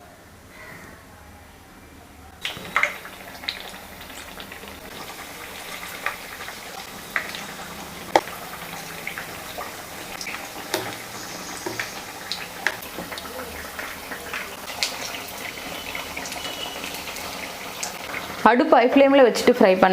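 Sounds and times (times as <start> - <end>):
oil pops and crackles: 2.4 - 5.2, 8.1 - 8.4, 10.1 - 15.2
hot oil sizzling: 2.4 - 19.9.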